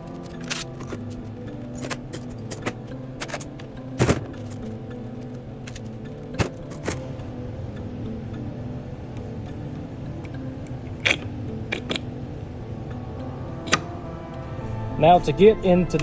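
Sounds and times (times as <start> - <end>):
background music with held tones: 0.0 - 16.0
metal tools clanking: 0.1 - 7.0.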